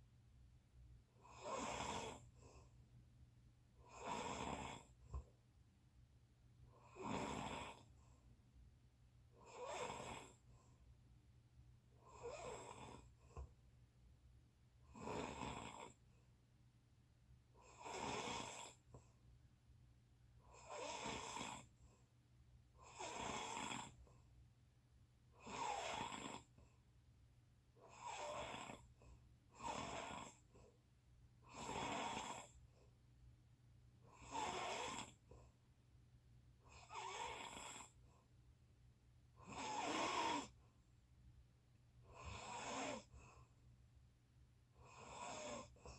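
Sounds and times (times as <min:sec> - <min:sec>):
person snoring: 0:34.2 - 0:35.1, 0:36.8 - 0:37.9, 0:39.5 - 0:40.5.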